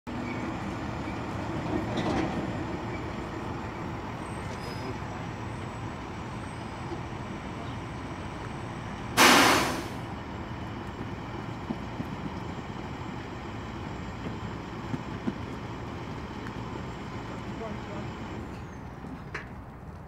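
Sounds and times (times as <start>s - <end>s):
burst of hissing: 9.2s - 10.0s.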